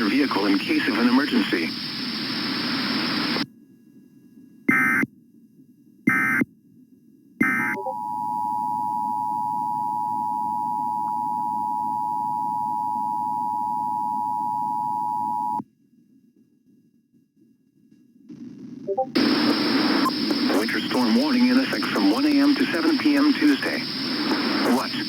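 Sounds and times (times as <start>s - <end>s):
faint low hiss: 0.0s - 4.6s, 16.0s - 25.0s.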